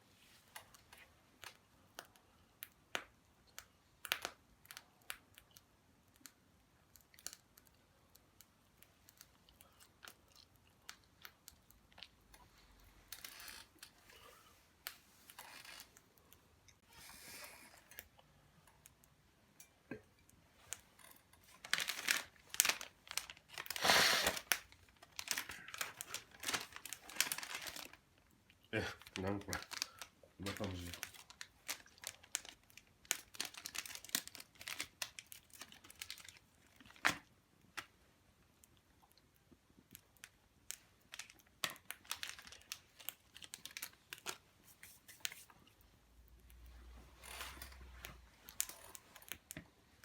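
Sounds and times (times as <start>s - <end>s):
packaging crinkling: 21.5s - 28.0s, 29.0s - 37.2s, 40.7s - 45.5s.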